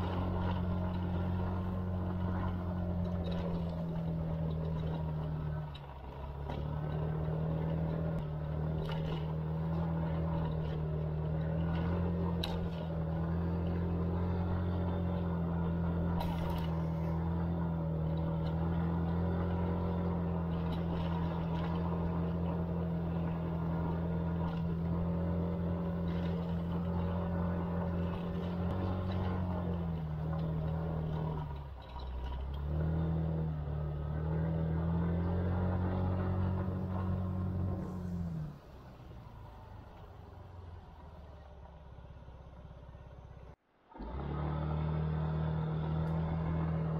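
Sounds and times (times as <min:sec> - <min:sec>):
scooter engine running: 0:00.0 - 0:32.9.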